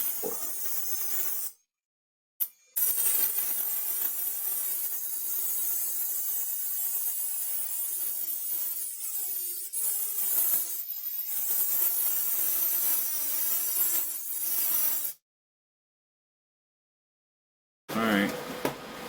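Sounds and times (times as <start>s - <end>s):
rotary tool grinding metal: 0.0s - 1.6s, 2.4s - 15.2s.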